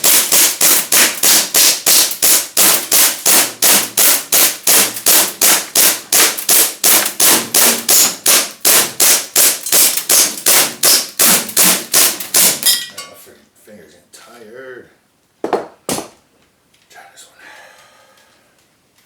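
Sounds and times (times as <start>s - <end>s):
airsoft gun shots: 0.0s - 12.7s.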